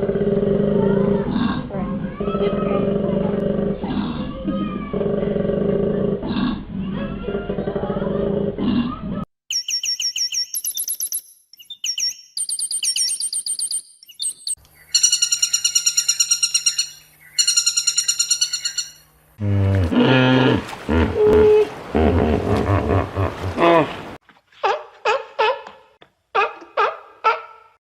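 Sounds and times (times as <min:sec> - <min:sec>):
high chirping bird calls: 0:09.5 - 0:19.0
low animal call: 0:19.4 - 0:24.2.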